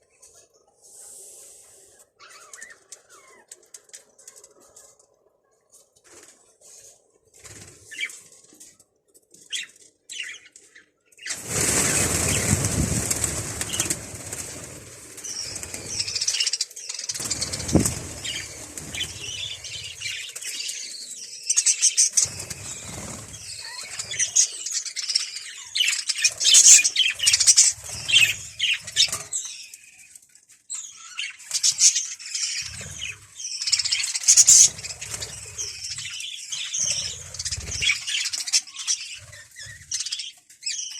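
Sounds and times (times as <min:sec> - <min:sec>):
birds flapping wings: 0:11.2 - 0:20.6, 0:22.1 - 0:24.4, 0:26.2 - 0:29.3, 0:32.6 - 0:36.1, 0:36.9 - 0:38.6.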